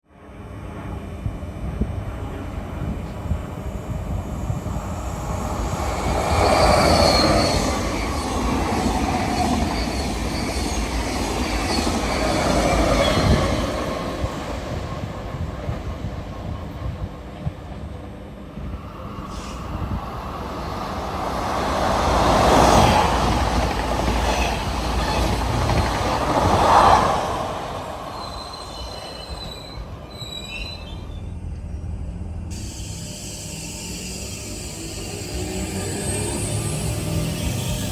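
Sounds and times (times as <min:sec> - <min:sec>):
electric train on rails: 0:00.1 - 0:37.9
high wheel squealing: 0:03.7 - 0:14.8, 0:18.9 - 0:31.4.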